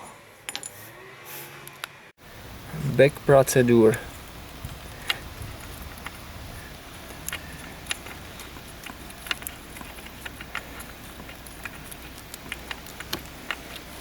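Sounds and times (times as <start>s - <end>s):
low steady hum: 2.2s - 14.0s.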